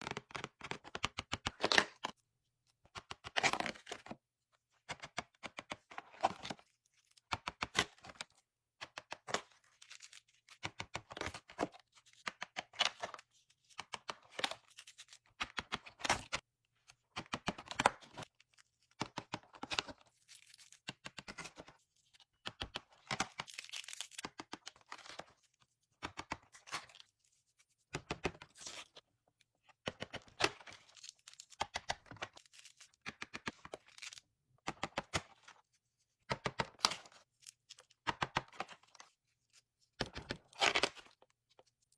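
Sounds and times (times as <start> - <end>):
crackly clicking and tearing of packaging: 22.7 - 25.2.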